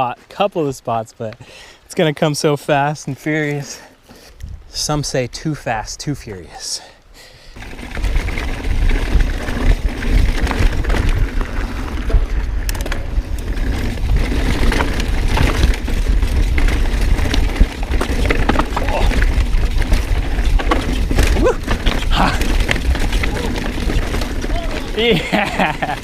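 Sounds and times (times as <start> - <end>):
wind rumble on microphone: 4.4 - 5.0, 7.6 - 26.0
bike tyres rattling over rocks: 7.6 - 26.0.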